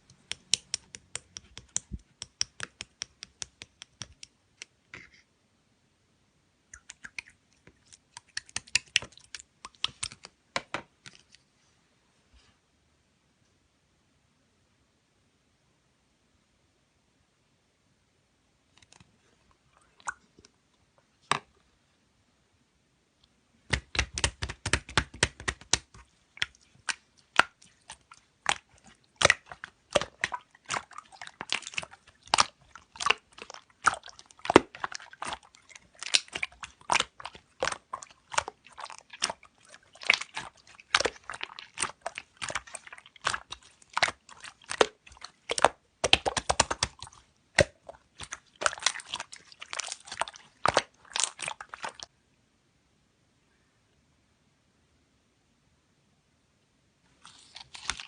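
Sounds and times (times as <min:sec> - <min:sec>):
slime crackling and popping: 0:08.1 - 0:10.3, 0:23.7 - 0:52.1.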